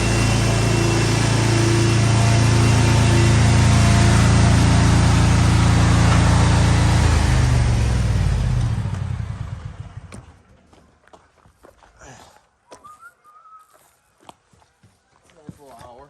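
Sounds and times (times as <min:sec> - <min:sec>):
lawn equipment engine spinning down: 0:00.0 - 0:10.4.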